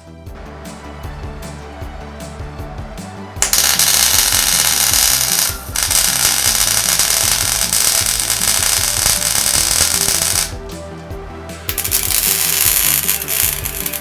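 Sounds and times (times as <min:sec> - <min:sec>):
arc welding crackling hiss: 0:03.4 - 0:10.6, 0:11.7 - 0:14.0.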